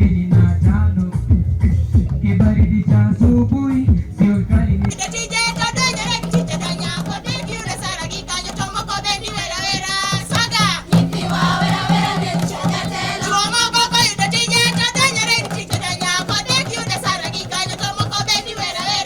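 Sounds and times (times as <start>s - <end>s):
amplified backing music with beat: 0.0s - 5.5s
voices singing: 2.2s - 19.0s.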